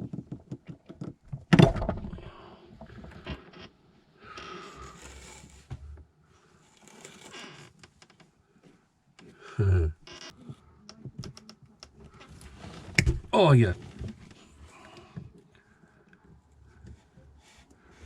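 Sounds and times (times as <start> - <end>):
low thud: 1.5 - 2.3.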